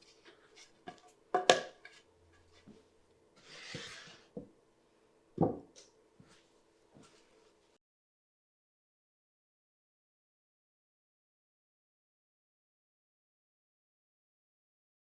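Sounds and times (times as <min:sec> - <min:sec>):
rustling slide: 0:03.4 - 0:04.3.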